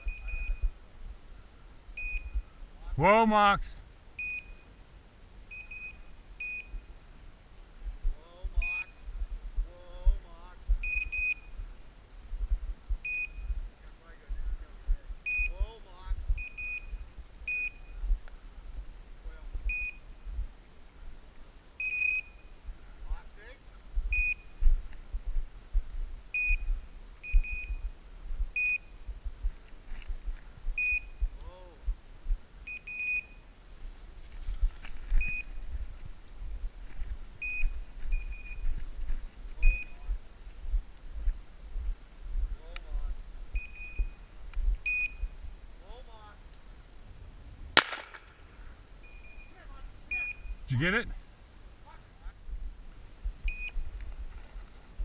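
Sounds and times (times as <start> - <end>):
short high beeps: 0.0 - 0.8, 2.0 - 2.5, 4.2 - 4.7, 5.5 - 6.9, 8.6 - 9.1, 10.8 - 11.6, 13.0 - 13.6, 15.2 - 15.7, 16.4 - 18.1, 19.7 - 20.0, 21.8 - 22.6, 24.1 - 24.6, 26.4 - 27.9, 28.6 - 29.0, 30.8 - 31.3, 32.7 - 33.4, 35.2 - 35.6, 37.4 - 38.7, 39.6 - 40.0, 43.6 - 45.4, 49.0 - 51.0, 53.5 - 53.8
short high electronic beeps: 10.8 - 11.6, 15.3 - 15.6, 49.1 - 51.0
thumping and rumble on microphone: 12.3 - 15.2.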